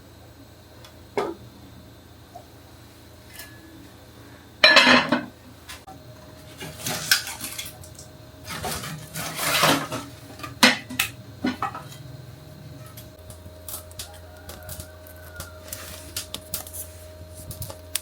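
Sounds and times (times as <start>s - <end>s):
kitchenware clinking and clattering: 4.6s - 5.3s, 6.6s - 12.0s.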